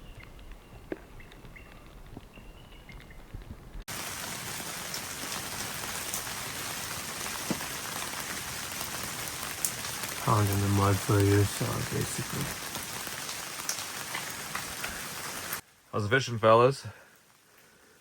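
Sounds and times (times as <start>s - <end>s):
steady hiss: 3.9s - 18.0s.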